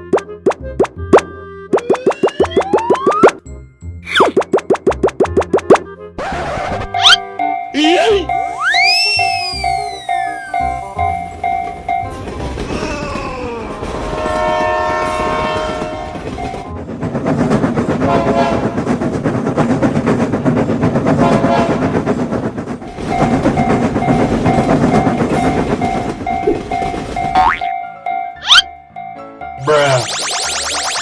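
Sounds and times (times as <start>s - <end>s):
railroad crossing bell ringing: 7.2s - 12.7s, 22.9s - 30.0s
train clattering over rail joints: 10.6s - 28.0s
train horn: 13.8s - 16.4s, 18.0s - 18.8s, 21.2s - 22.0s.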